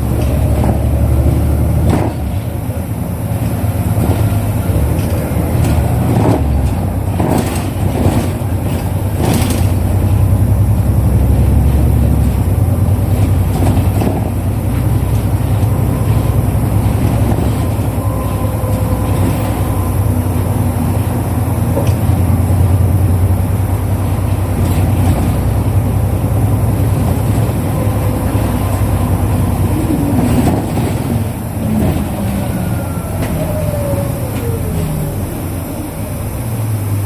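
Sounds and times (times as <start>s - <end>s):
bus diesel engine humming: 0.0s - 37.0s
falling whine: 8.3s - 37.0s.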